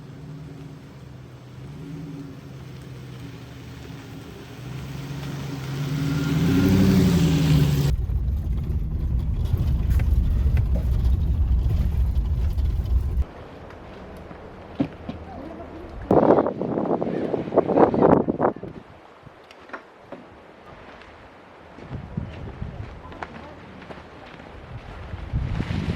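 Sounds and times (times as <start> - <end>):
vehicle engine rising in pitch: 0.0 - 13.2
wind buffeting microphone: 6.5 - 13.4, 15.8 - 19.4, 21.8 - 23.2, 24.5 - 25.9.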